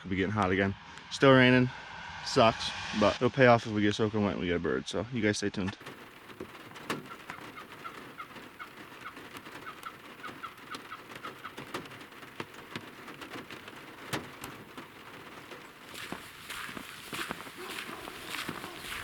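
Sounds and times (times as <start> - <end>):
bird calling: 5.8 - 19.0
rain drops ticking: 5.8 - 19.0.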